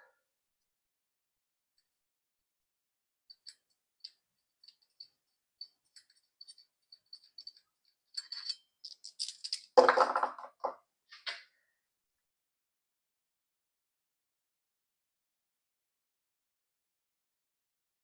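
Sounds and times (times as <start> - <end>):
small metal parts clicking: 3.3 - 9.8.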